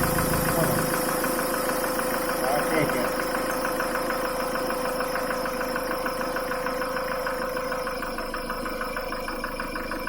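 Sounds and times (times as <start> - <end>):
engine whine: 0.0 - 5.4
diesel engine idling with knock: 0.0 - 10.0.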